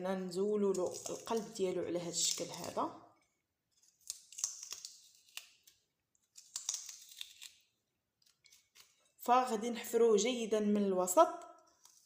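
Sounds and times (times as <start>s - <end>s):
knife scraping turnip: 0.7s - 1.5s, 3.8s - 7.6s.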